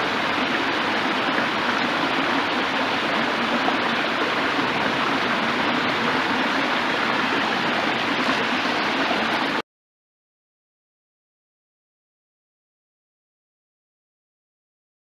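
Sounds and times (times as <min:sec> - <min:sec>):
stream water flowing: 0:00.0 - 0:09.6.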